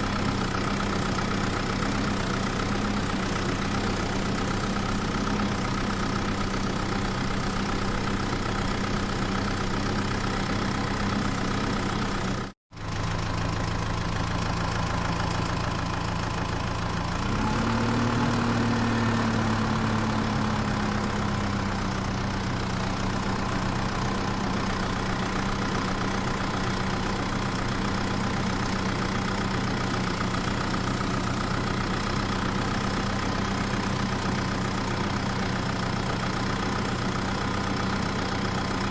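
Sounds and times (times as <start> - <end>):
engine idling and revving: 0.0 - 38.9.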